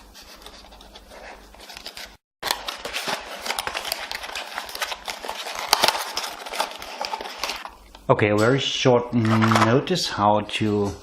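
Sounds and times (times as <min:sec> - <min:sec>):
packaging rustling: 0:00.2 - 0:07.8.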